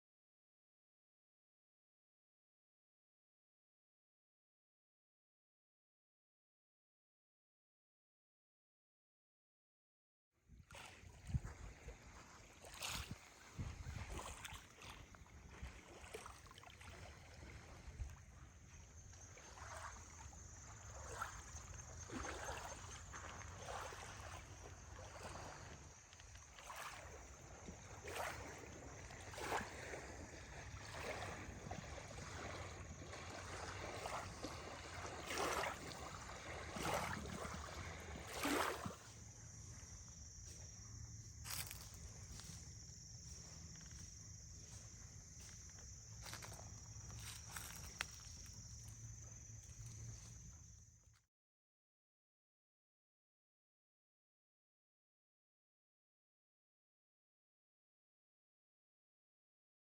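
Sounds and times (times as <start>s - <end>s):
water lapping and splashing: 10.6s - 50.8s.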